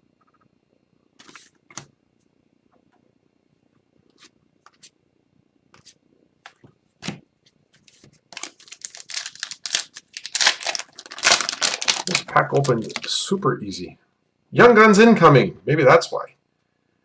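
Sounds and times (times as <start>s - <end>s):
wrapper tearing and crinkling: 7.9s - 13.2s.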